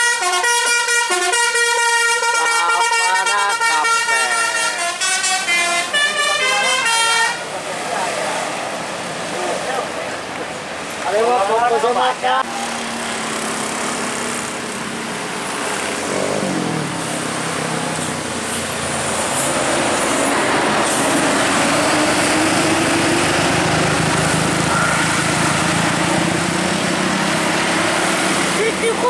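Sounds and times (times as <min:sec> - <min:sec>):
vehicle passing: 0:07.4 - 0:29.0
bus engine pulling away: 0:12.5 - 0:29.0.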